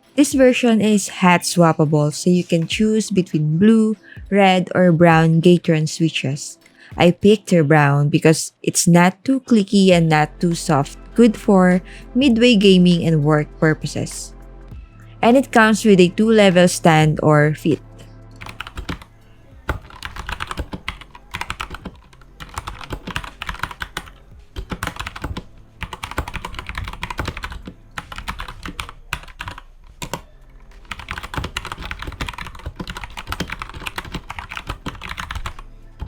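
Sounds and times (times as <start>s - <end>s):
mechanical keyboard typing: 18.4s - 19.1s, 19.7s - 35.6s.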